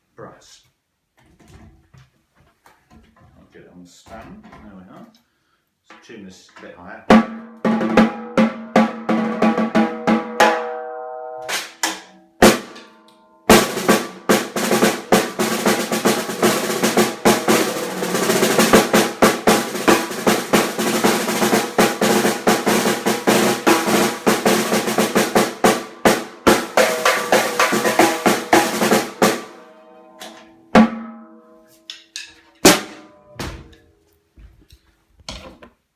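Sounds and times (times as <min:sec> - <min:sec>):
snare drum strokes and rolls: 0:07.1 - 0:10.6, 0:12.4 - 0:12.8, 0:13.5 - 0:29.6, 0:30.8 - 0:31.1.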